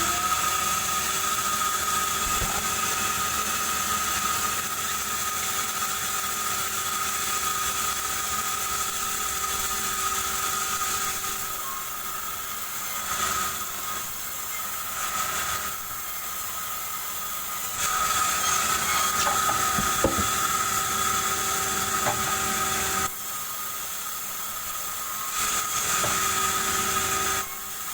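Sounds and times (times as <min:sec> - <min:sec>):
power saw cutting wood: 0:00.0 - 0:27.9.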